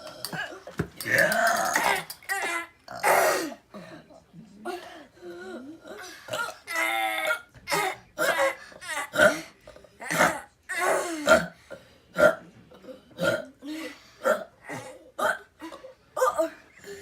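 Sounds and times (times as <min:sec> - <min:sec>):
armpit burps: 0:01.0 - 0:02.1, 0:02.9 - 0:03.4, 0:11.2 - 0:13.6.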